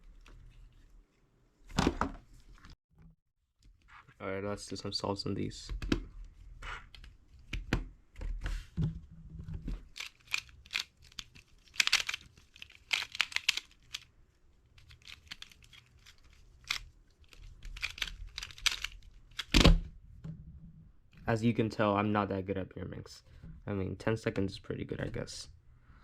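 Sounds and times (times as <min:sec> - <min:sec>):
plastic puzzle clicking and clacking: 0:09.9 - 0:14.1, 0:14.8 - 0:19.6.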